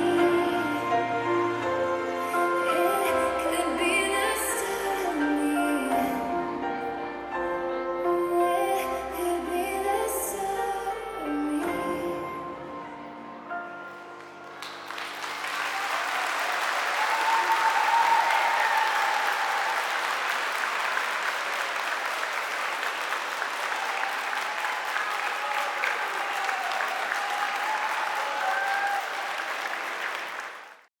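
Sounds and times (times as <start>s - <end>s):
dance music: 0.0s - 14.2s
audience applauding: 14.1s - 30.9s.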